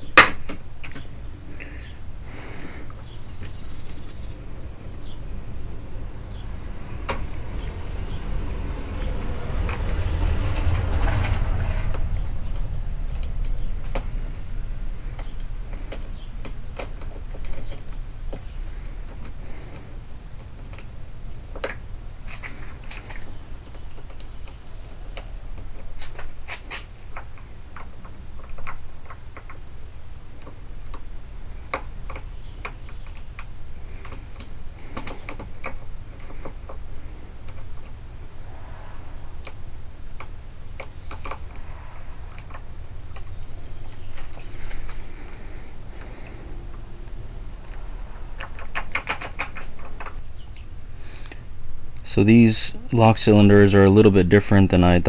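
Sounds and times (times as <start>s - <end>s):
rubbing handling noise: 10.8s - 54.3s.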